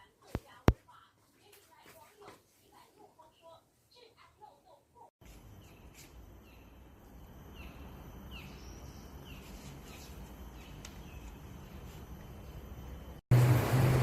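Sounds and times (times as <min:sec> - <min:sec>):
bird chirping: 0:05.6 - 0:12.6.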